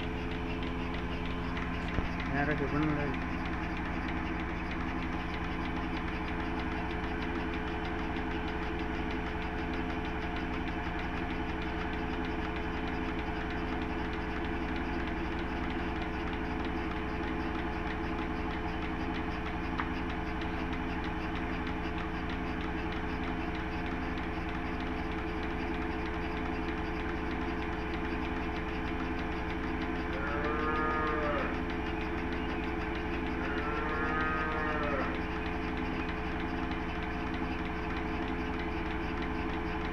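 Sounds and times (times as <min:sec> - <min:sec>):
pulsing machine hum: 0:00.0 - 0:39.9
cattle mooing: 0:30.2 - 0:31.6, 0:33.4 - 0:35.2.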